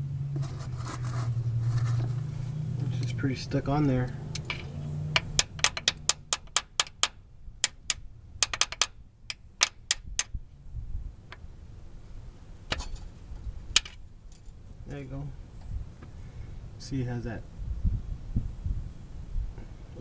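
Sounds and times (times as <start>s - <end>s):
sharp metal clicks and taps: 4.0s - 10.4s.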